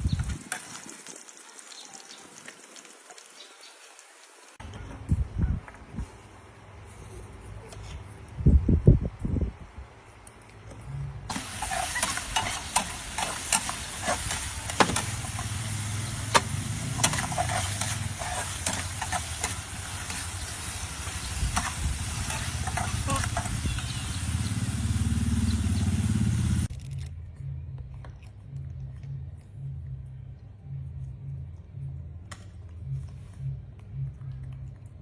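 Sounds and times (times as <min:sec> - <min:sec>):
oil popping and crackling: 0:00.0 - 0:04.6, 0:11.3 - 0:26.7
food sizzling in hot oil: 0:11.3 - 0:26.6.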